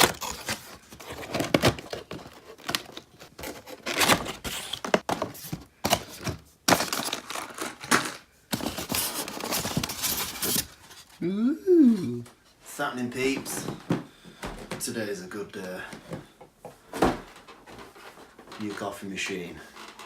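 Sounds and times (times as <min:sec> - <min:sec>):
packaging crinkling and tearing: 0:00.0 - 0:05.1.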